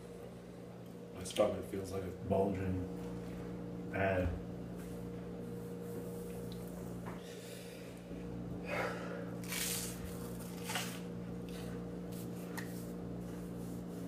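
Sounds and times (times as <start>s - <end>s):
low electrical hum: 0.0s - 14.0s
man breathing heavily: 7.2s - 9.4s.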